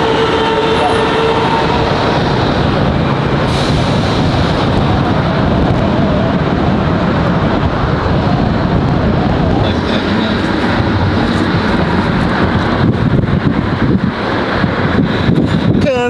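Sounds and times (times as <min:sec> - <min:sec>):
car road and wind noise: 0:00.0 - 0:16.0.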